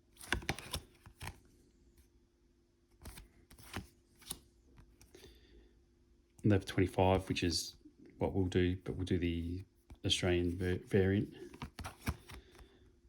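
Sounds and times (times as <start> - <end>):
cards rustling and tapping: 0.0 - 1.5, 2.9 - 5.2, 9.8 - 12.8.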